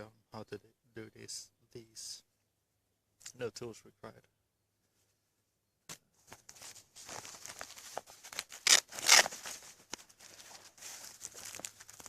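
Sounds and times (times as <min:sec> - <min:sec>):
gear rustling and crinkling: 0:06.2 - 0:12.0
loud rasping sounds: 0:08.6 - 0:09.4.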